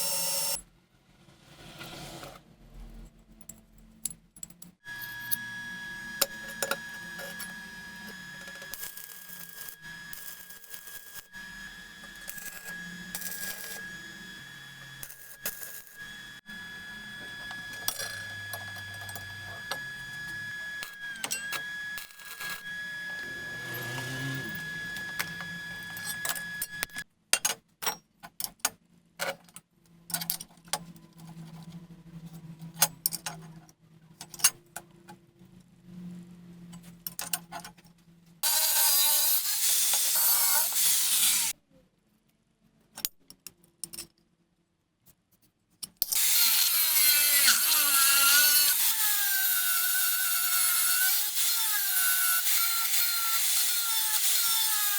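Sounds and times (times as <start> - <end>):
metal parts clicking and knocking: 3.3 - 4.8, 42.9 - 44.2
high-pitched motor whine: 4.9 - 27.0
power tool grinding: 4.9 - 27.0, 38.4 - 41.6, 46.2 - 54.9.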